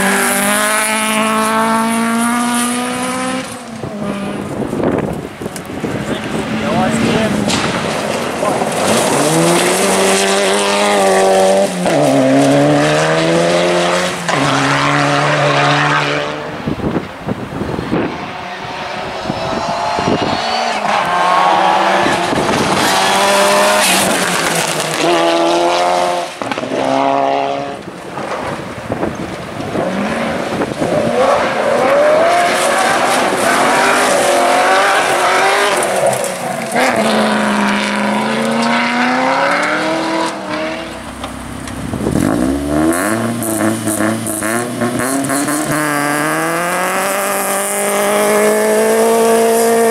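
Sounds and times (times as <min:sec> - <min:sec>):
tyre noise: 0:00.0 - 0:15.9
rally car engines revving: 0:00.0 - 0:49.9.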